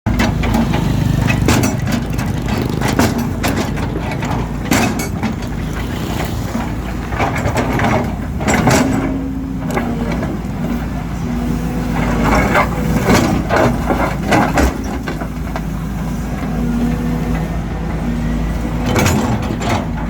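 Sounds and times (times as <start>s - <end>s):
excavator diesel engine running: 0.1s - 20.0s
bucket cracking and scraping asphalt: 0.3s - 8.5s.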